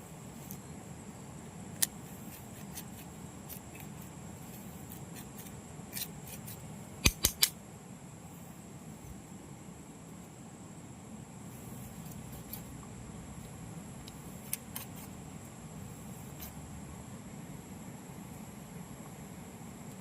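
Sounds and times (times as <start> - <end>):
faint high whine: 0.0 - 20.0
steady low hiss: 0.0 - 20.0
sharp clicks or knocks: 7.0 - 7.6.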